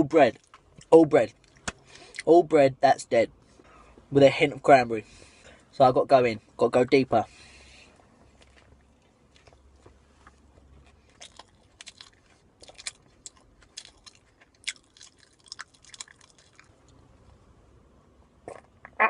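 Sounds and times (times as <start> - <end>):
man chewing a tortilla wrap: 7.6 - 17.4.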